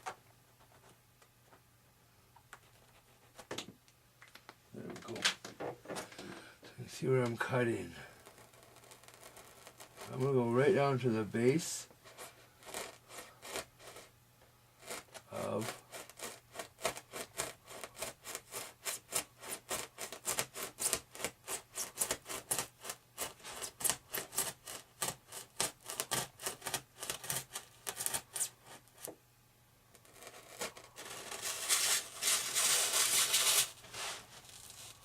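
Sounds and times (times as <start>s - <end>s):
hobby knife sawing: 14.8s - 29.0s, 30.1s - 33.8s
blade scraping: 30.0s - 35.0s.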